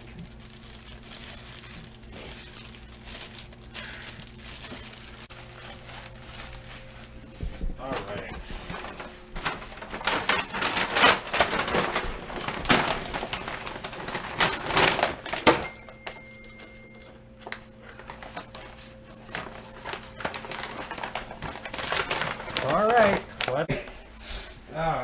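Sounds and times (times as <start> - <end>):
steady low hum: 0.0 - 25.0
objects clicking and clattering: 8.0 - 23.7.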